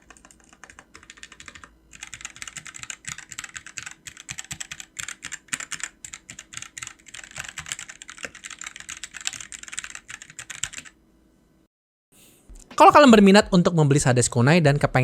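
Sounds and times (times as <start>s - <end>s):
mechanical keyboard clacks: 0.0s - 10.9s.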